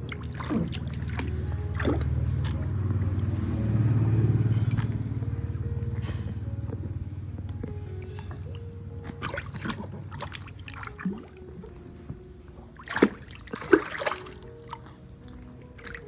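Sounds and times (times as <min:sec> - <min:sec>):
water splashing in a pool: 0:00.0 - 0:06.5, 0:07.6 - 0:16.0.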